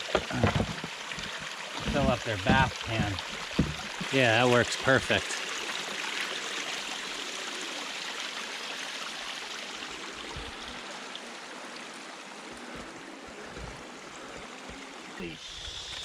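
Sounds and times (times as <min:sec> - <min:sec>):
dull low bumps: 0:00.0 - 0:04.2
water running into a pan: 0:00.0 - 0:06.5.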